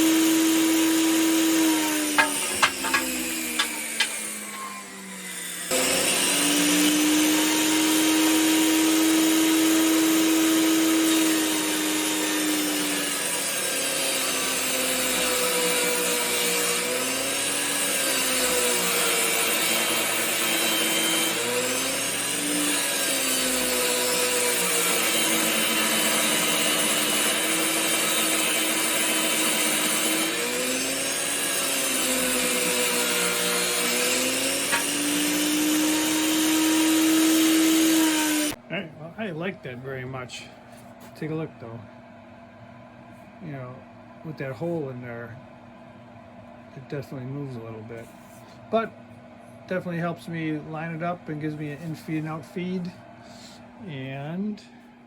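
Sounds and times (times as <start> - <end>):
table saw ripping wood: 0.0 - 38.6.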